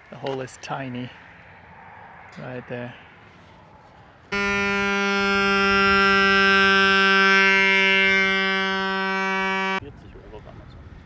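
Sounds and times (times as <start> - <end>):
electric pump buzzing hum: 4.3 - 9.8.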